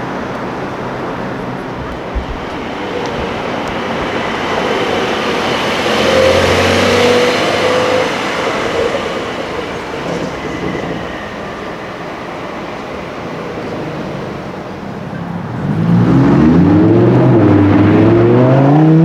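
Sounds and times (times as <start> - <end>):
vehicle passing by: 0.0 - 10.2, 15.1 - 19.0.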